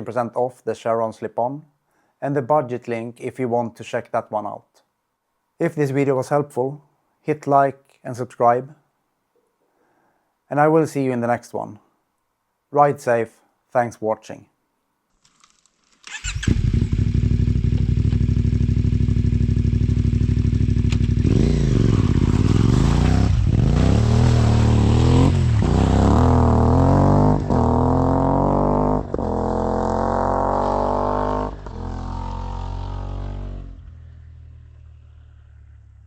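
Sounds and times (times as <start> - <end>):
motorcycle engine idling and accelerating: 16.2 - 36.0.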